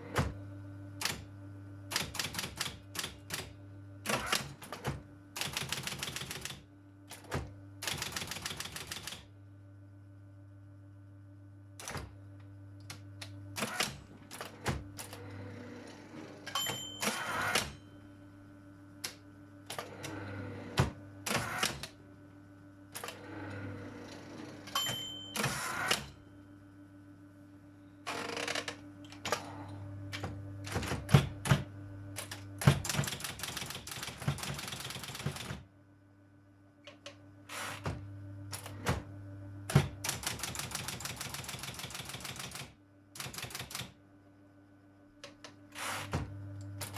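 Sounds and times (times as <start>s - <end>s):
typewriter clicks and clunks: 1.0s - 1.3s, 1.9s - 3.5s, 4.1s - 9.3s, 11.8s - 12.1s, 13.6s - 15.2s, 16.5s - 17.8s, 20.8s - 21.9s, 24.7s - 26.1s, 30.1s - 35.6s, 39.7s - 44.0s, 45.2s - 46.9s
typewriter bell ringing: 16.5s - 17.8s, 24.7s - 26.0s.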